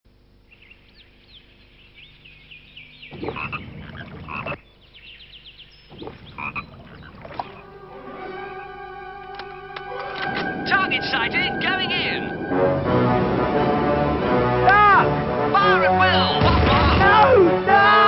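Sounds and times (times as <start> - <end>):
frogs croaking: 0.1 - 7.8.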